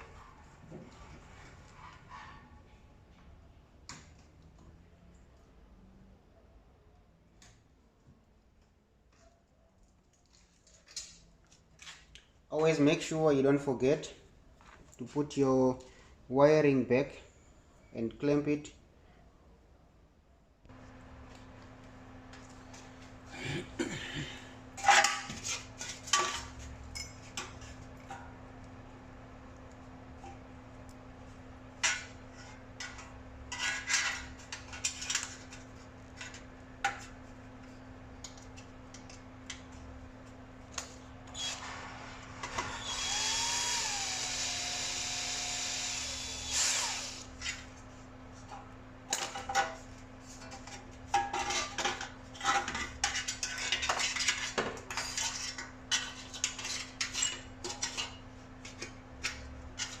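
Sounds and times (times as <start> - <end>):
cordless drill running: 42.6 - 47.3.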